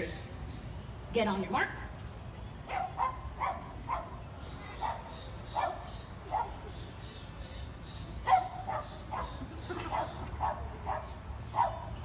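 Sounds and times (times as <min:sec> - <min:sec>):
dog barking: 0:02.7 - 0:04.2, 0:04.8 - 0:06.6, 0:08.2 - 0:11.9.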